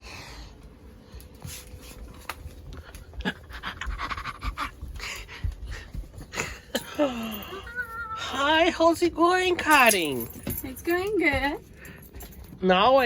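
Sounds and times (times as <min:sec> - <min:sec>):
rapid panting breaths: 0:02.7 - 0:06.9.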